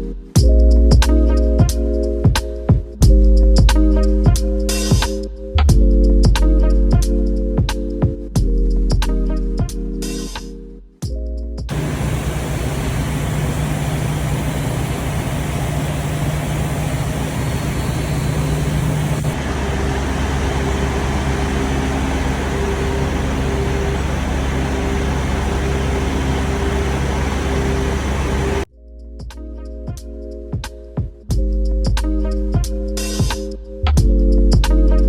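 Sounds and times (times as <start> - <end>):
high hum: 11.7 - 28.7
road noise: 11.7 - 28.7
truck engine drone: 11.7 - 28.7.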